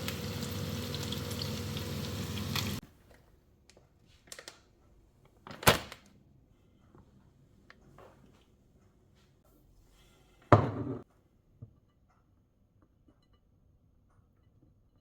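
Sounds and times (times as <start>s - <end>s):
water running from tap: 0.0s - 2.8s.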